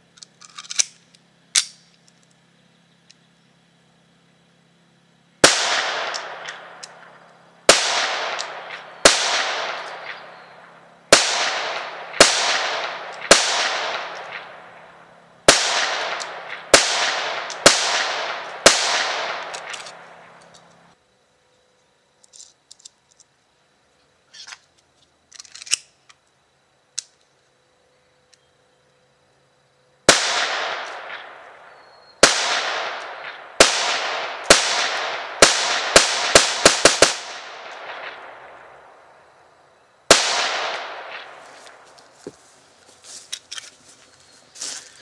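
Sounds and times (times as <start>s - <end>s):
gun handling clicks: 0.1s - 2.4s, 19.4s - 20.8s, 22.2s - 23.3s, 25.3s - 26.3s
pistol shots echoing: 5.4s - 20.4s, 30.1s - 39.0s, 40.1s - 41.8s.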